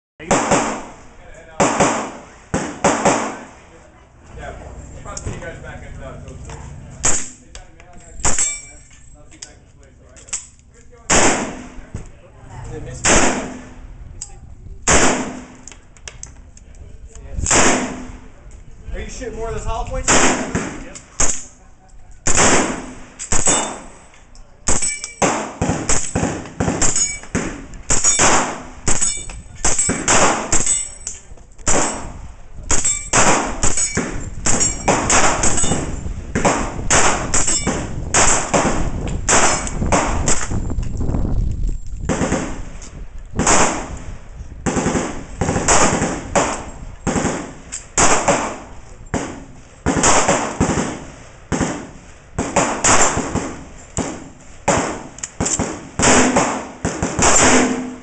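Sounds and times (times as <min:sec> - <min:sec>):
rifle shots: 0:00.2 - 0:03.5, 0:11.0 - 0:11.9, 0:12.9 - 0:13.8, 0:14.8 - 0:15.6, 0:17.4 - 0:18.3, 0:20.0 - 0:21.5, 0:22.2 - 0:24.0, 0:24.7 - 0:31.0, 0:31.6 - 0:40.6, 0:42.1 - 0:42.8, 0:43.4 - 0:58.0.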